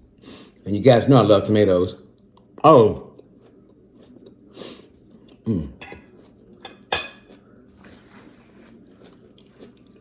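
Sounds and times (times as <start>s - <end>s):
dishes and cutlery clinking: 5.8s - 8.4s.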